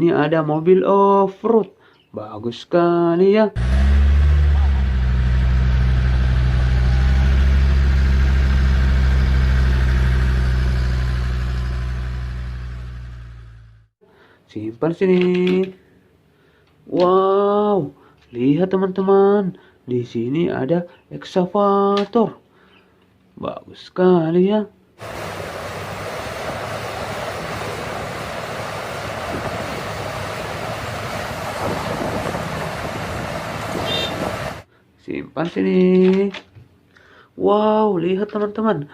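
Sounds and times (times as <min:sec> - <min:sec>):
off-road vehicle engine idling: 0:03.6 - 0:13.8, 0:25.0 - 0:34.6
steady rushing noise: 0:25.0 - 0:34.7.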